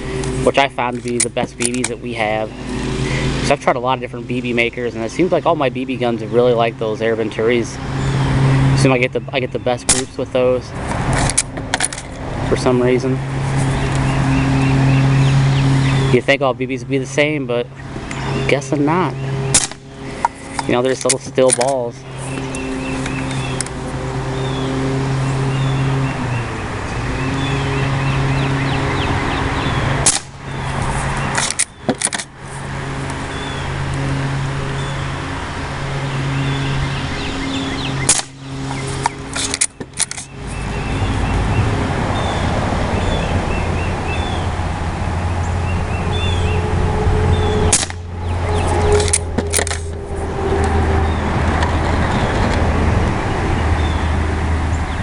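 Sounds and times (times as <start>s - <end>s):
birds chirping: 0.0s - 55.0s
engine drone: 0.0s - 55.0s
air rifle pops: 47.7s - 48.0s.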